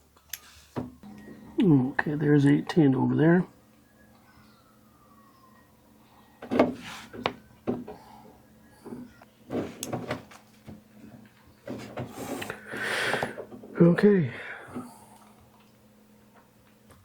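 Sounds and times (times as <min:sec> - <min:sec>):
wires rustling: 0:08.8 - 0:13.8.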